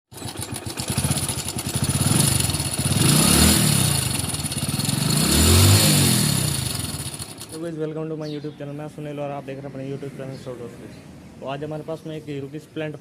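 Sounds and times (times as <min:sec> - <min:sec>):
motorcycle engine revving: 0:00.1 - 0:07.8.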